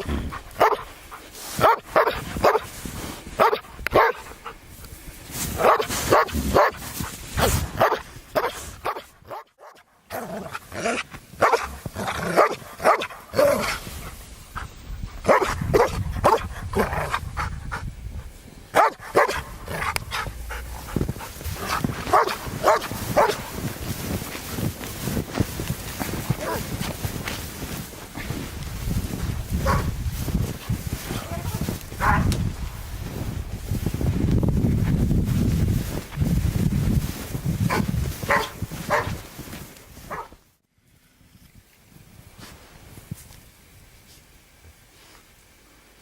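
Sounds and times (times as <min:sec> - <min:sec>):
dog barking: 0:00.6 - 0:00.9, 0:01.6 - 0:02.7, 0:03.4 - 0:04.4, 0:05.6 - 0:06.8, 0:07.4 - 0:09.9, 0:11.4 - 0:13.8, 0:15.2 - 0:17.2, 0:18.8 - 0:20.9, 0:21.6 - 0:23.6, 0:26.3 - 0:26.8, 0:29.6 - 0:29.9, 0:31.1 - 0:32.4, 0:37.7 - 0:39.2, 0:40.1 - 0:40.4.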